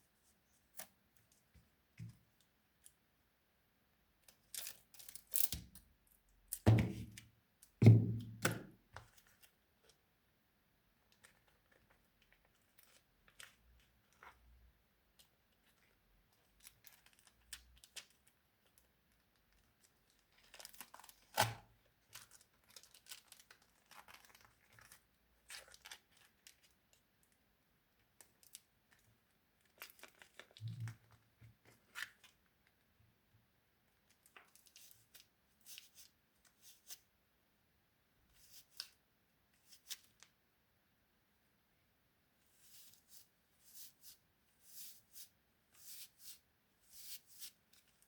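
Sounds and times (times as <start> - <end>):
craft materials crinkling and rustling: 15.1 - 27.3, 28.2 - 32.8.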